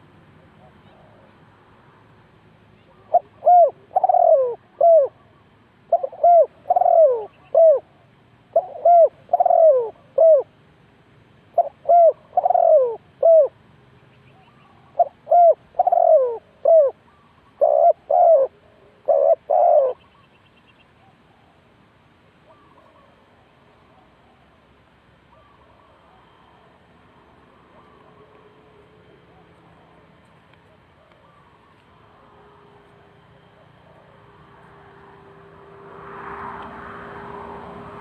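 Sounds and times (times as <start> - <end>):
dove cooing: 2.9 - 10.5, 11.5 - 13.6, 14.4 - 20.2, 22.4 - 24.6, 25.3 - 26.8, 27.4 - 30.0.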